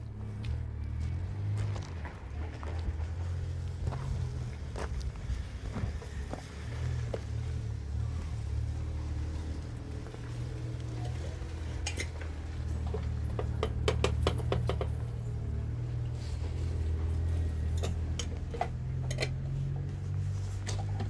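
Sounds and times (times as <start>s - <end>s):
hard objects clinking: 11.0s - 15.5s.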